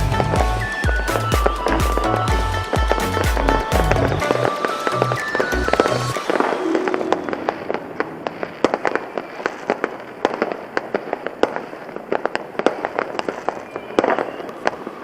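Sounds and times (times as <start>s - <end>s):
background music: 0.0s - 9.2s
fireworks crackling pops: 0.0s - 15.0s.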